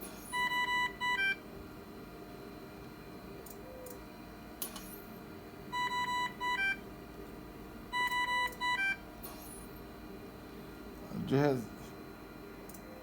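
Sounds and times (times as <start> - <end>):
ventilator beeping: 0.3 - 1.5, 5.7 - 6.9, 7.8 - 9.6.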